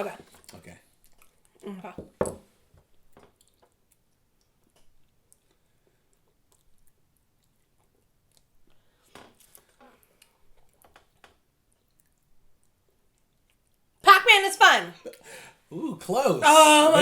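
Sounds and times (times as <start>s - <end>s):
wet chewing mouth sounds: 0.4s - 1.7s, 2.9s - 13.9s.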